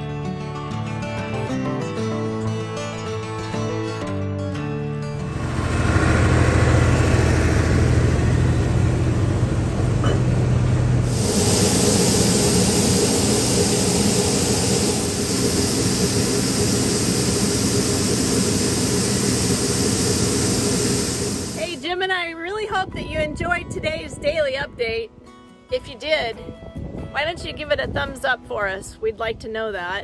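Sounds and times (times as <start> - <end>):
engine running: 5.1 - 21.9.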